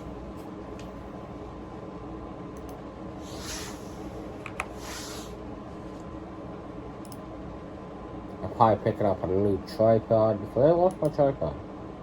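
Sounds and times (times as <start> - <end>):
soft hissing swells: 3.2 - 5.5.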